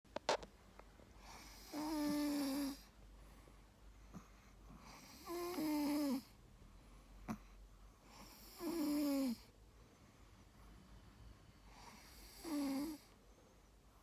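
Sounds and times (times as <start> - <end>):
dog snoring: 1.2 - 2.9, 4.1 - 6.4, 7.3 - 9.5, 11.7 - 13.2.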